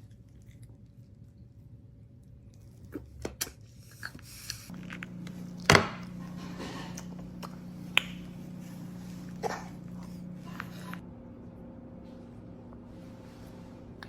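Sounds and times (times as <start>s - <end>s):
steady low hum: 4.4s - 14.0s.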